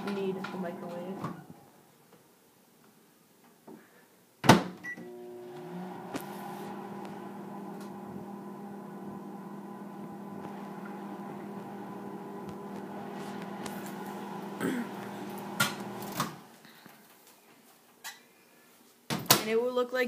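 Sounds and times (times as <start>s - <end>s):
microwave oven humming: 4.9s - 16.5s.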